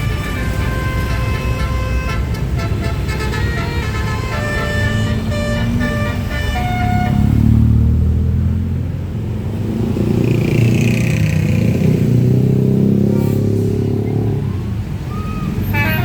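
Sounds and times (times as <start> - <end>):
bus horn note: 0.0 - 7.6, 15.6 - 16.0
bus diesel engine revving: 0.0 - 16.0.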